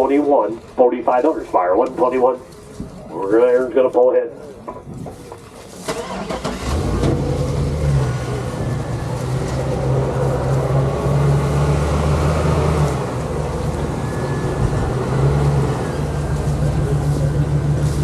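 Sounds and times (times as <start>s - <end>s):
tractor engine revving: 5.8s - 18.0s.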